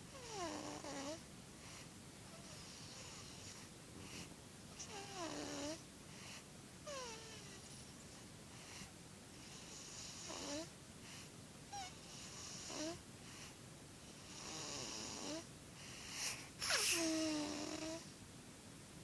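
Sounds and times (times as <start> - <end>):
baby snoring with squeaks: 0.1 - 1.2, 2.3 - 3.6, 4.8 - 5.8, 6.9 - 7.7, 9.5 - 10.7, 11.7 - 13.0, 14.2 - 15.5, 16.2 - 18.1.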